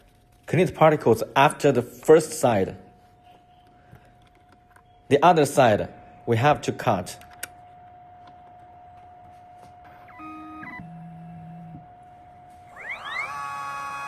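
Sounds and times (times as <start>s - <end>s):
machine motors whining: 7.6s - 14.0s
cutter spindle whining: 10.0s - 14.0s.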